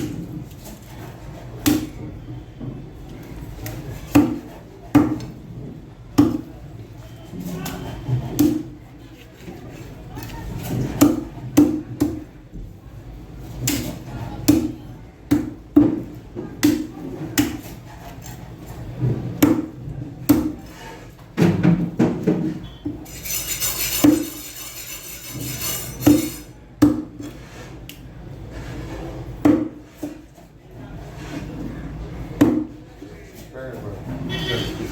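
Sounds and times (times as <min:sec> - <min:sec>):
knife chopping on wooden block: 0:13.6 - 0:17.7, 0:20.3 - 0:20.6, 0:26.0 - 0:27.2, 0:29.4 - 0:30.2.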